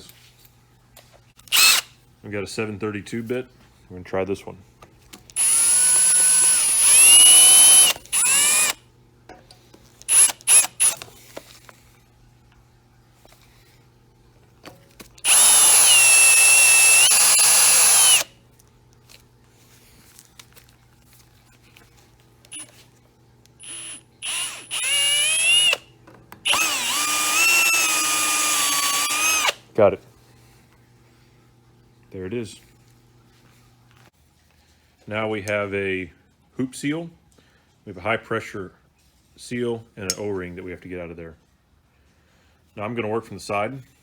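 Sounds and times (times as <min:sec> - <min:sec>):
electric drill drilling metal: 0:01.5 - 0:01.9, 0:05.4 - 0:08.8, 0:10.1 - 0:11.0, 0:15.2 - 0:18.3, 0:22.5 - 0:22.8, 0:23.6 - 0:29.6.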